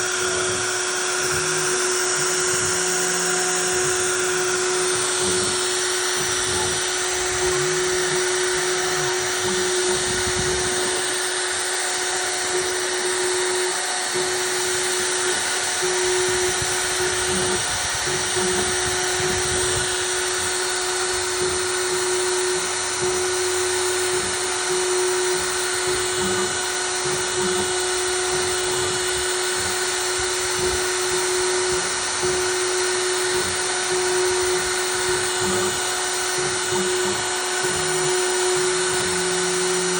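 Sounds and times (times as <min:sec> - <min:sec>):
router spindle cutting wood: 0:00.0 - 0:39.9.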